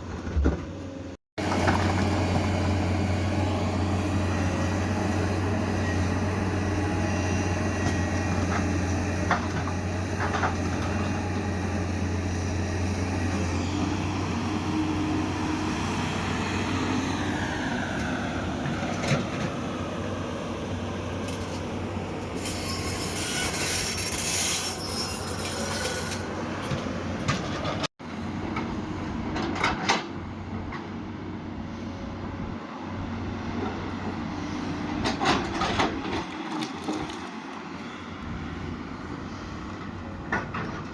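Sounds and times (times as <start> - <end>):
excavator diesel engine running: 0.1 - 24.0.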